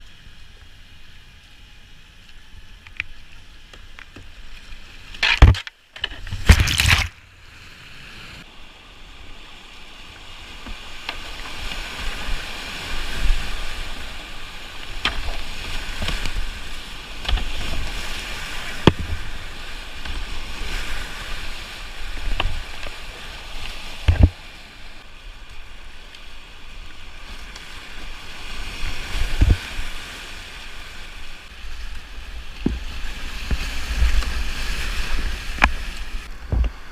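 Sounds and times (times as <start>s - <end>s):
loud splashes: 6.3s - 7.4s
sharp knocks on kayak: 18.8s - 19.2s, 24.1s - 24.4s.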